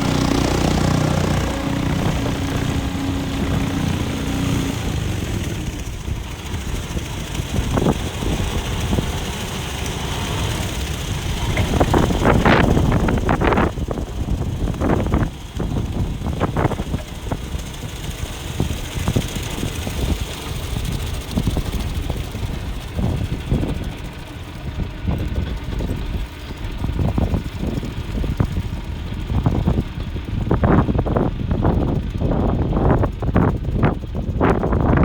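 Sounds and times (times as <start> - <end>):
tractor diesel engine running: 0.0 - 35.0
wind buffeting microphone: 0.0 - 35.0.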